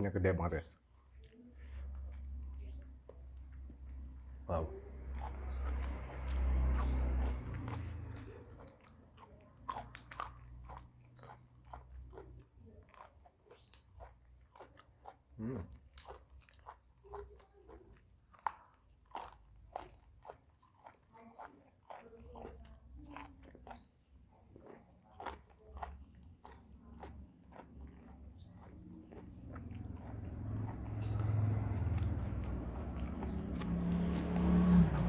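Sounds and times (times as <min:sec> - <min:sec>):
wet chewing: 0:00.0 - 0:35.0.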